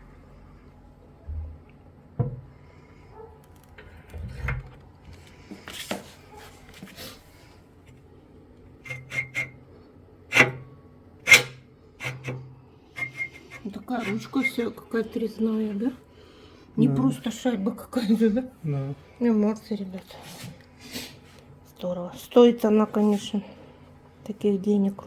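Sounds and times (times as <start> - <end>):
rubbing: 8.8 - 9.6, 10.3 - 10.7, 11.3 - 14.6
short high squeaks: 13.0 - 14.6.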